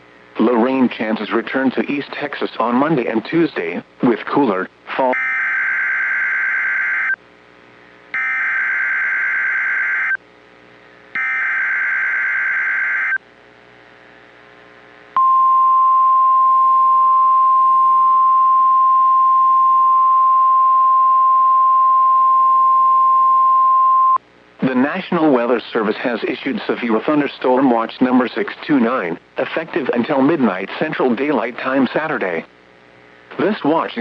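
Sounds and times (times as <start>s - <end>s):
steady warning alarm tone: 5.1s - 7.2s, 8.2s - 10.2s, 11.2s - 13.2s
screechy digital data bursts: 11.2s - 13.2s.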